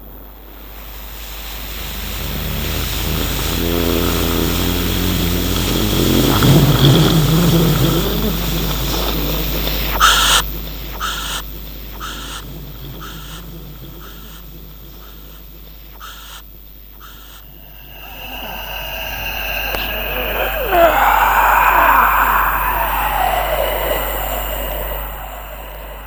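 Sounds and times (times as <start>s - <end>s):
hissing airy ghost swell: 1.4s - 8.8s, 17.4s - 26.0s
low moaning tone: 1.7s - 9.1s, 17.4s - 26.0s.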